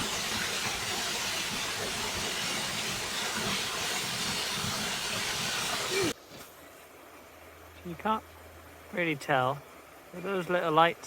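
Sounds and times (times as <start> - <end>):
waterfall rushing: 0.0 - 6.2.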